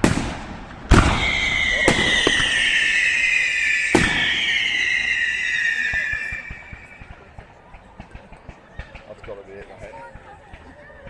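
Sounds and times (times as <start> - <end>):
fireworks bangs: 0.0 - 10.6
high whistling tone: 1.1 - 7.5.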